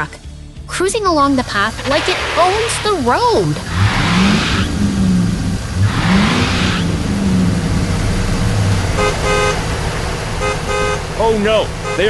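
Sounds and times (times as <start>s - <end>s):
car engine revving: 0.8s - 12.0s
hiss burst: 1.8s - 7.9s
short horn beeps: 9.0s - 9.6s, 11.8s - 12.0s.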